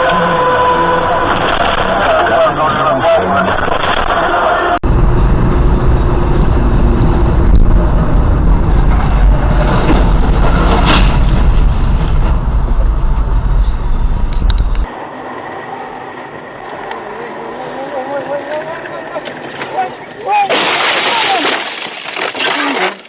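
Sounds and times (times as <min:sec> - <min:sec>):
vehicle driving rumble: 0:04.7 - 0:21.0.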